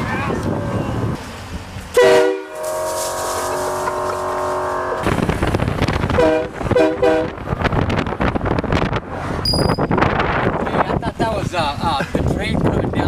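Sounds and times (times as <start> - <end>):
rushing noise: 0.0 - 10.6
train horn chord and toots: 2.0 - 5.2, 6.1 - 7.4.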